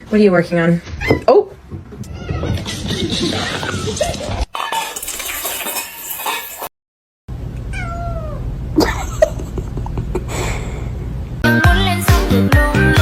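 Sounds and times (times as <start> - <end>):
cat meowing: 7.7 - 8.5.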